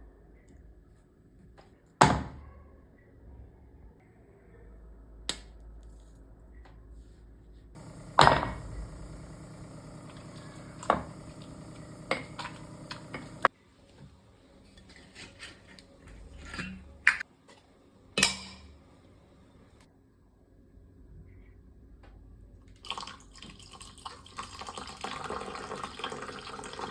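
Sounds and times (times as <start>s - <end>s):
steady hum: 7.8s - 13.5s.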